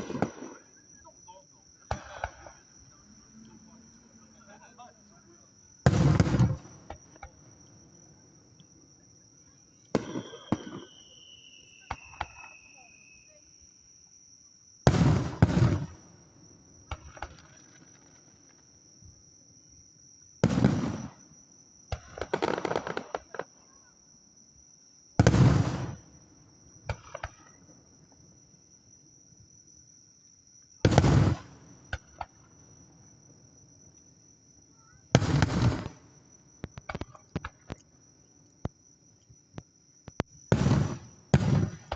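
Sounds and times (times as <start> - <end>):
fireworks booming: 0.0 - 0.7, 1.8 - 3.0, 5.8 - 8.0, 9.8 - 12.9, 14.8 - 16.2, 16.8 - 18.6, 20.4 - 23.5, 25.2 - 26.2, 26.8 - 27.8, 30.8 - 33.1, 34.7 - 37.8, 39.6 - 41.9
fireworks crackle: 0.0 - 0.7, 9.9 - 12.9, 16.9 - 18.6, 22.0 - 23.5, 30.8 - 32.4, 35.1 - 36.0, 40.2 - 41.9
high insect trill: 0.0 - 41.8
falling whistle: 10.1 - 13.4.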